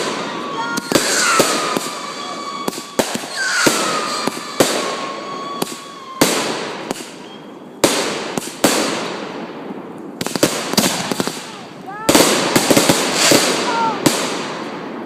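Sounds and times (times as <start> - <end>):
firework whistle falling in pitch: 0.0 - 7.8
fireworks bangs and crackling: 0.0 - 15.0.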